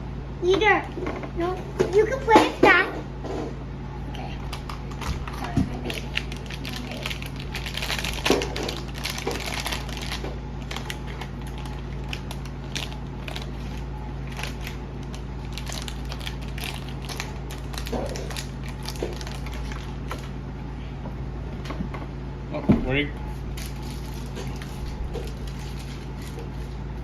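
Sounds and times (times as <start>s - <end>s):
steady low hum: 0.0s - 27.0s
plastic packaging crinkling: 4.4s - 20.4s, 23.4s - 26.8s.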